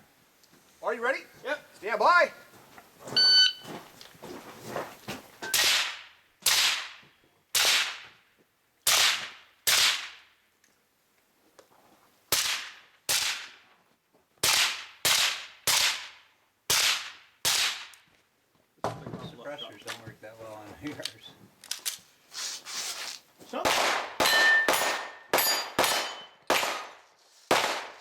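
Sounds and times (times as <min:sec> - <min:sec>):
gunshots: 0:05.6 - 0:07.0, 0:07.6 - 0:08.0, 0:08.9 - 0:10.2, 0:14.4 - 0:17.9, 0:23.6 - 0:28.0.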